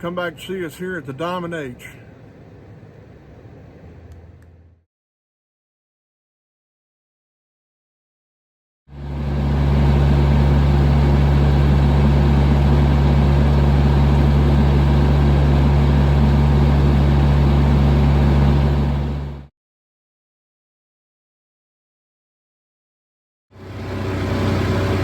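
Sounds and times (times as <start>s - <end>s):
tractor diesel engine running: 8.9s - 19.5s, 23.6s - 25.0s.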